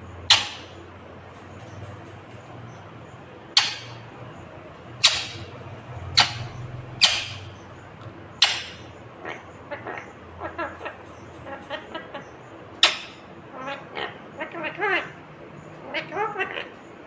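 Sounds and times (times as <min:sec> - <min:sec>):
parakeet squawks: 0:00.3 - 0:00.8, 0:03.5 - 0:04.1, 0:04.8 - 0:07.8, 0:08.4 - 0:15.2, 0:15.8 - 0:16.9.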